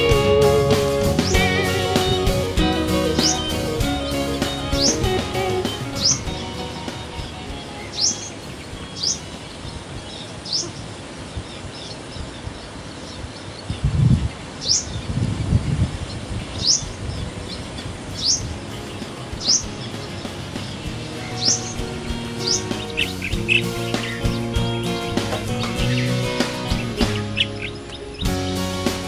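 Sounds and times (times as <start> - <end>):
bird call sweeping upward: 0.0 - 10.9
wind rumble on microphone: 8.6 - 23.6.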